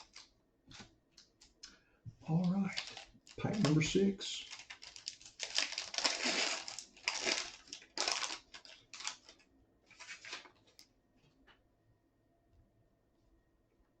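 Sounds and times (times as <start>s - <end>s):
foil wrapper tearing and crinkling: 0.0s - 0.3s, 2.3s - 10.8s.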